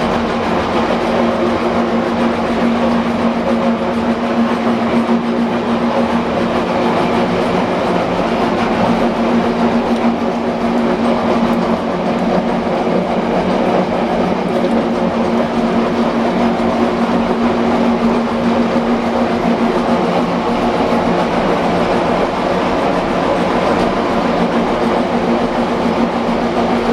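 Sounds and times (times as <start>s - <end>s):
machine humming and rattling: 0.0s - 26.9s.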